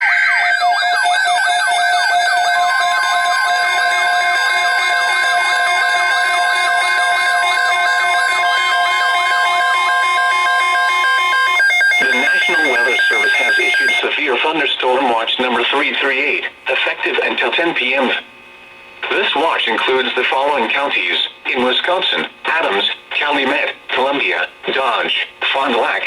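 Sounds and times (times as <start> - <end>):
sweeping siren-like alert tone: 0.0 - 14.0
steady warning alarm tone: 0.0 - 14.1
steady beeping tones: 1.1 - 14.0.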